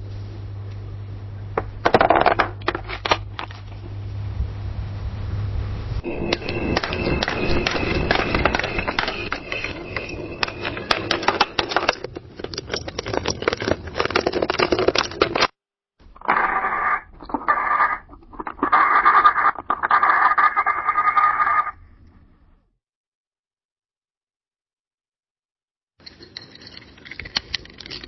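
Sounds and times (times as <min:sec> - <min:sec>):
coffee maker crackling and sputtering: 0:06.0 - 0:15.4, 0:16.2 - 0:21.6.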